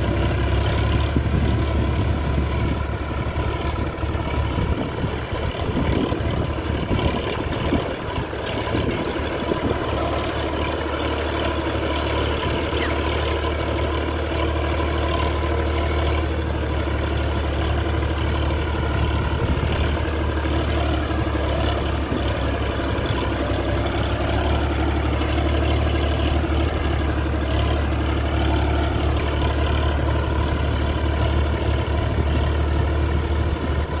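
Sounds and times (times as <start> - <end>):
tractor diesel engine running: 0.0 - 34.0.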